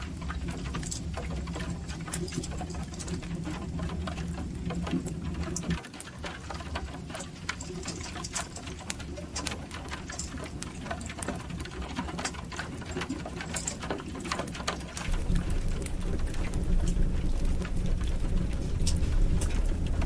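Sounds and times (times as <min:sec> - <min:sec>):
rain on a metal roof: 0:00.0 - 0:20.0
steady low rumble: 0:15.1 - 0:20.0.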